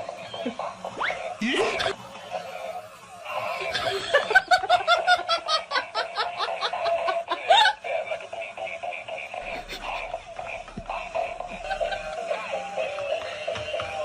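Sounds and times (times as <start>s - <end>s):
person laughing: 1.4s - 12.8s.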